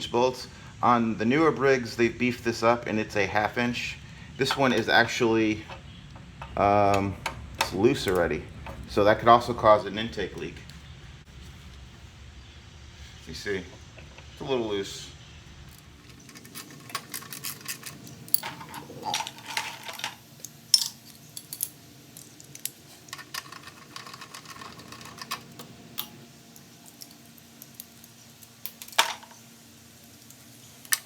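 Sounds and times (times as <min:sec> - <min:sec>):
hand tools clinking on metal: 0:15.8 - 0:28.2.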